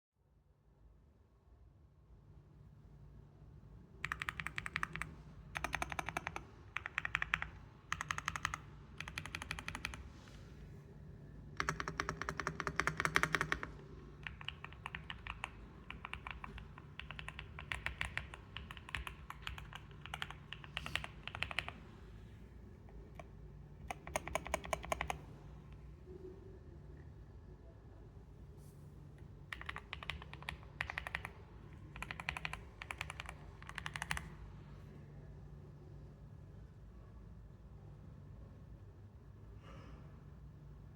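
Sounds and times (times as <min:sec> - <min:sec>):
typing on mechanical keyboard: 0:04.0 - 0:10.1, 0:11.6 - 0:21.8, 0:23.0 - 0:25.2, 0:29.5 - 0:34.4.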